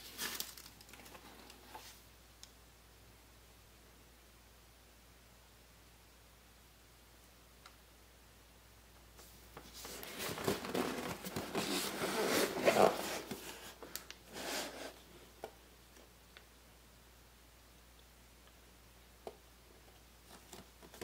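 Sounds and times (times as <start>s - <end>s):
packaging rustling and scraping: 0.0s - 2.0s, 9.6s - 15.0s.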